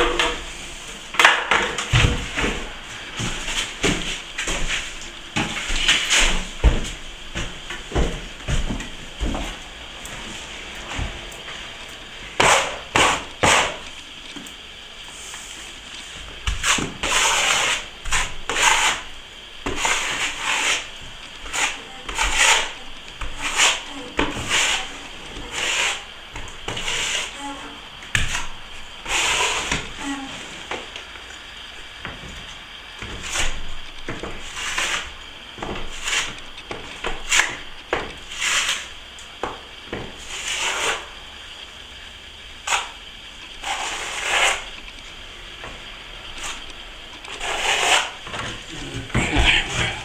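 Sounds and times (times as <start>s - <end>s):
trowel scraping plaster: 12.4s - 13.9s, 16.5s - 19.1s, 19.7s - 26.1s, 26.7s - 27.4s, 28.2s - 29.9s, 34.2s - 36.4s, 38.2s - 38.9s, 40.2s - 41.1s, 42.6s - 43.0s, 43.6s - 44.7s, 47.3s - 50.0s.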